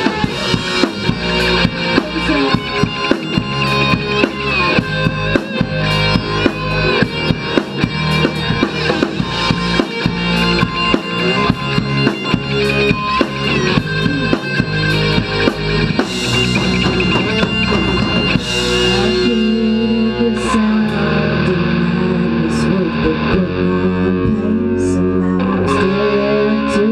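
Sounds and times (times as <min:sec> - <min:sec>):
rock music with drums and guitar: 0:00.0 - 0:26.9.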